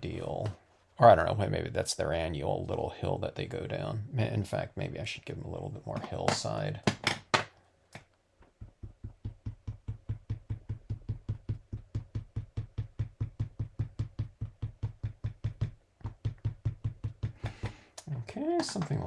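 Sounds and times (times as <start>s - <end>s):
rapid tapping on a table: 6.0s - 7.5s, 8.4s - 17.8s.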